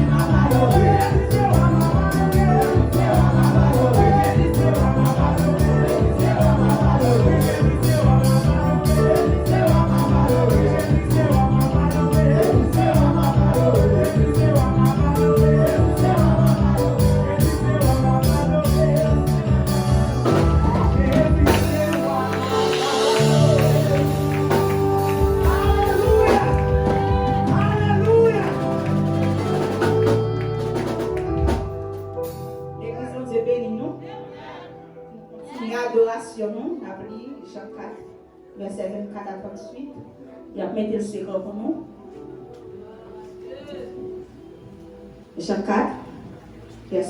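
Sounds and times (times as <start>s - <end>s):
people singing: 0.0s - 30.2s
drums: 0.0s - 32.6s
worship band playing: 0.0s - 35.4s.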